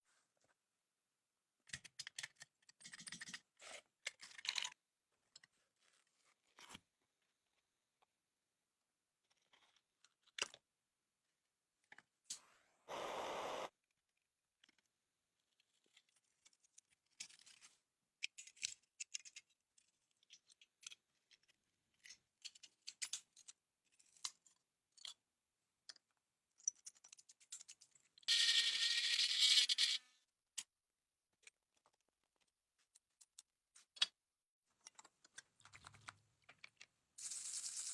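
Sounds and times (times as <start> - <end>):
hissing burst: 12.9 - 13.7.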